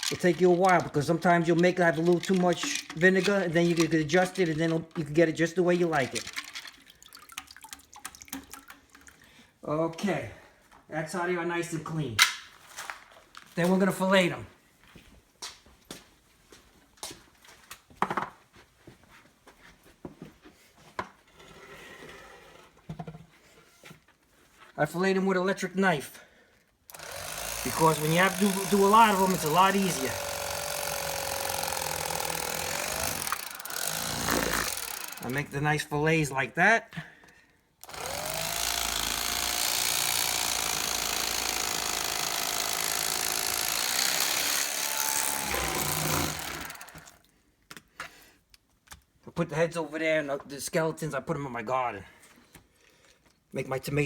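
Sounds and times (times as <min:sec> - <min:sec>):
electric carving knife buzzing: 0:26.9 - 0:35.4, 0:37.8 - 0:47.2.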